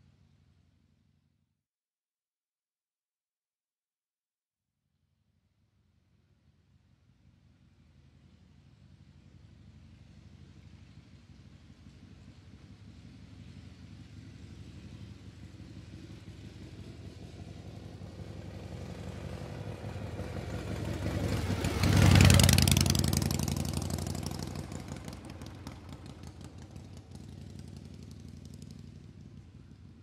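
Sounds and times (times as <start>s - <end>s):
vehicle engine passing by: 7.9s - 30.0s.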